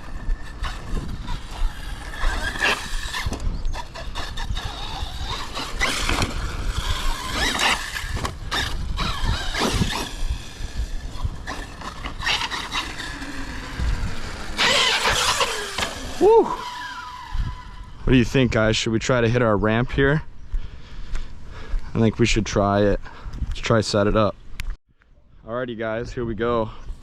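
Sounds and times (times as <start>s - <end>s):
rc car motor whining: 0.0s - 18.0s.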